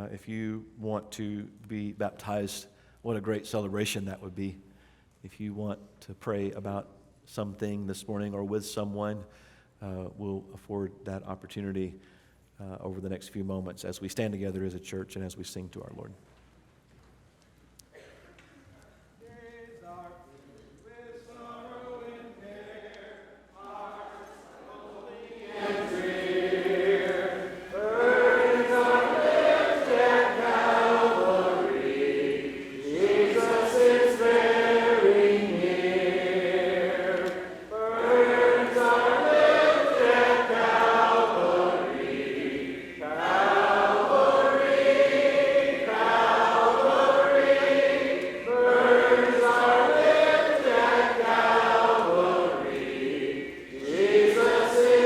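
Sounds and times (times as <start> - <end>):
congregation singing a hymn: 20.8 - 55.0.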